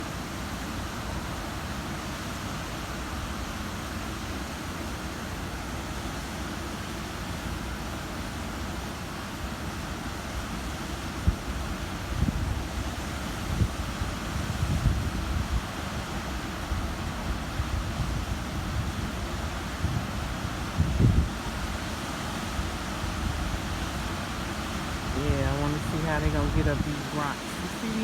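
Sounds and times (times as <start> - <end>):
wind rumbling on microphone: 11.2 - 21.9
ocean surf hissing: 15.8 - 28.0.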